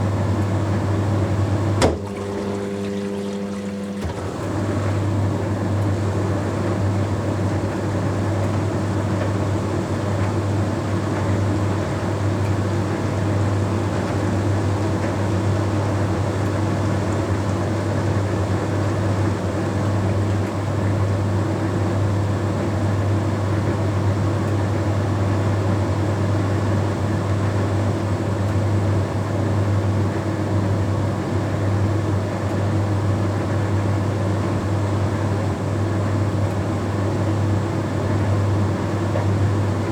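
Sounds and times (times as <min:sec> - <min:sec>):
tumble dryer humming: 0:00.0 - 0:11.3
water rushing through pump: 0:01.0 - 0:11.8.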